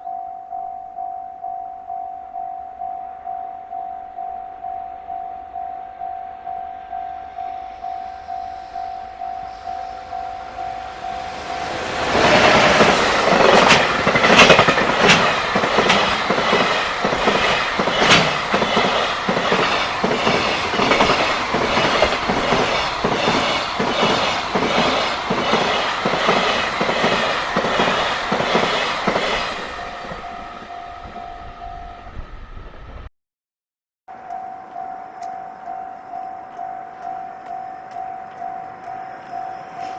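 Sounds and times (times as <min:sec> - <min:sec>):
crossing warning bell ringing: 0:00.0 - 0:32.6, 0:34.1 - 0:39.9
train wheels clattering over rail joints: 0:11.8 - 0:29.8.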